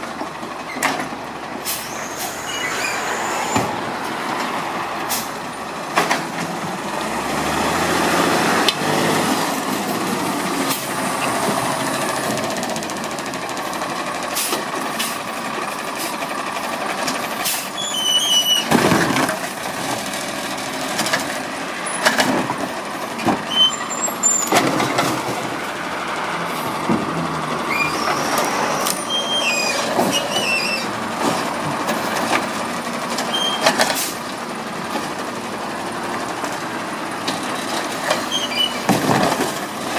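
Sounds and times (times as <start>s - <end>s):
garbage truck running: 0.0s - 39.9s
short high squeaks: 1.8s - 3.6s, 17.8s - 18.7s, 23.5s - 24.6s, 27.7s - 30.9s, 33.3s - 33.8s, 38.3s - 38.9s.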